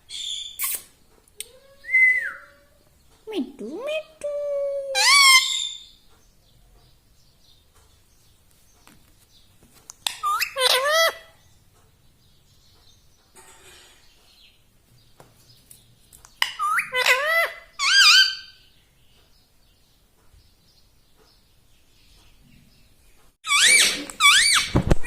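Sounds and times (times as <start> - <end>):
parakeet high-pitched calls: 5.0 - 5.9, 10.1 - 11.4, 16.4 - 18.7, 23.4 - 24.8.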